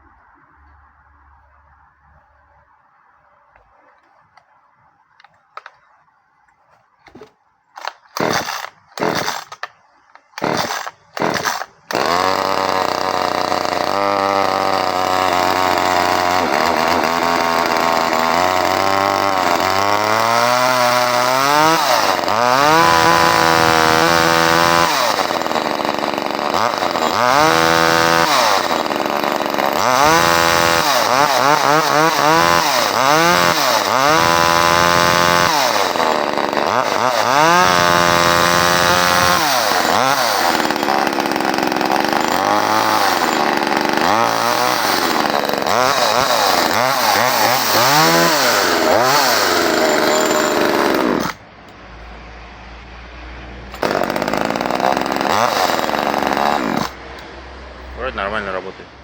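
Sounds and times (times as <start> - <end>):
chainsaw revving: 7.1 - 9.7, 10.3 - 51.4, 53.7 - 57.0.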